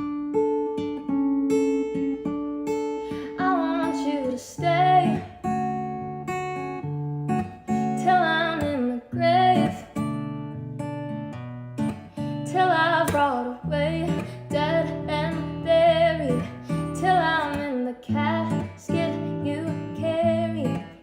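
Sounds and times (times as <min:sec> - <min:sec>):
acoustic guitar chords: 0:00.0 - 0:21.0
person singing: 0:03.2 - 0:05.4, 0:07.8 - 0:10.0, 0:12.5 - 0:21.0.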